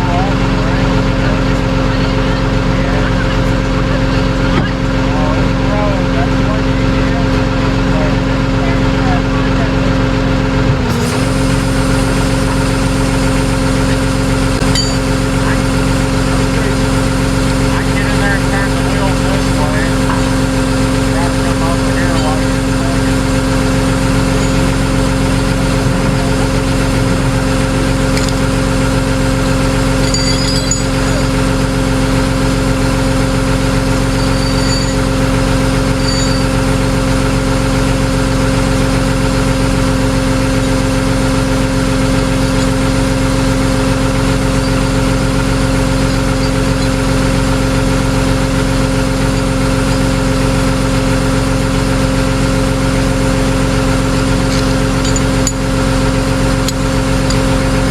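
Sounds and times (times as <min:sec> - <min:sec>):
vehicle engine idling: 0:00.0 - 0:57.9.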